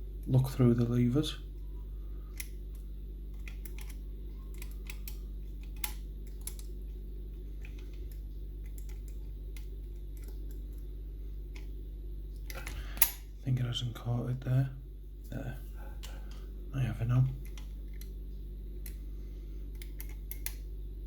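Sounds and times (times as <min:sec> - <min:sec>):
low hum: 0:00.0 - 0:21.0
lock picking clicks: 0:02.3 - 0:06.7, 0:07.6 - 0:10.6, 0:12.5 - 0:13.2, 0:19.7 - 0:20.6.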